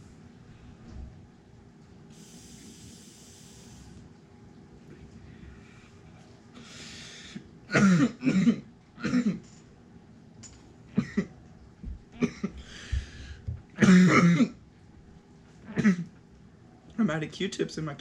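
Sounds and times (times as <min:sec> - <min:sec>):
breathy exhales: 0:02.1 - 0:04.0
man coughing hard: 0:07.7 - 0:09.4, 0:11.0 - 0:11.3, 0:12.2 - 0:12.6, 0:13.8 - 0:14.6, 0:15.7 - 0:16.1.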